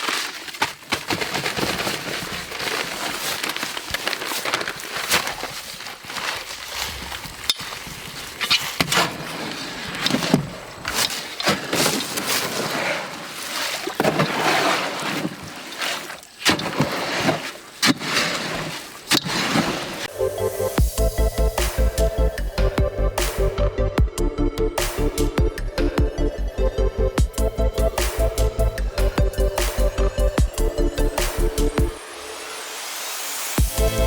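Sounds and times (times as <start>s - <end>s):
tool scraping wet concrete: 1.5s - 20.1s.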